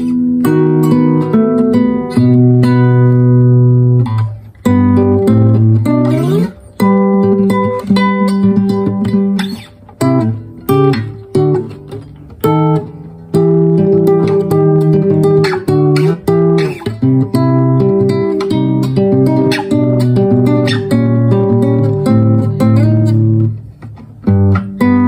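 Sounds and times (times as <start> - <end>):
acoustic guitar plucked notes: 0.0 - 25.0.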